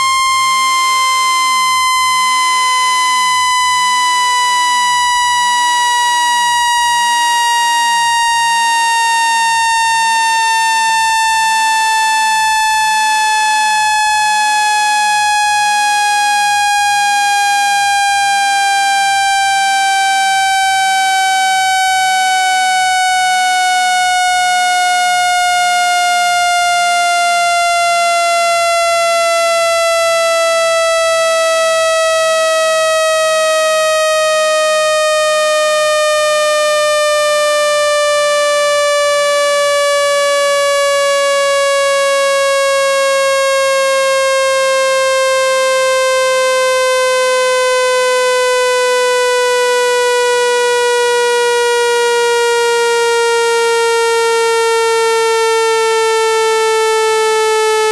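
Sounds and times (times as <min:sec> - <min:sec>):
buzzy descending synthetic tone: 0:00.0 - 0:41.8.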